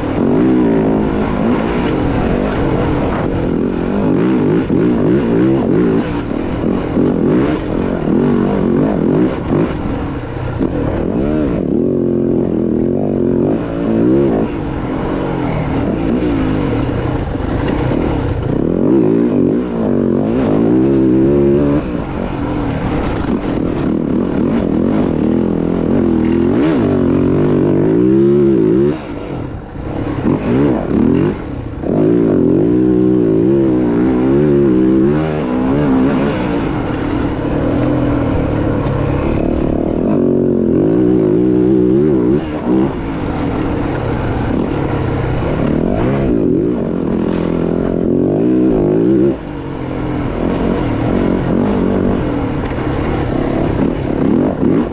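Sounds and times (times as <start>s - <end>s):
dirt bike engine revving: 0.0s - 54.9s.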